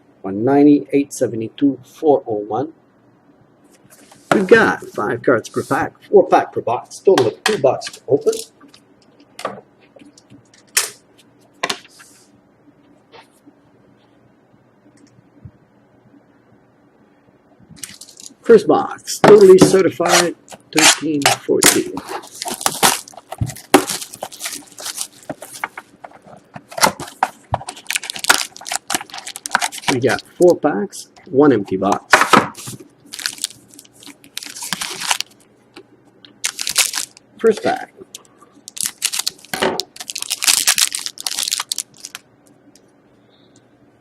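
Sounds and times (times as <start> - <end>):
cardboard and wrappers crackling: 19.3 - 30.4, 32.6 - 35.4, 36.4 - 37.8, 38.7 - 42.2.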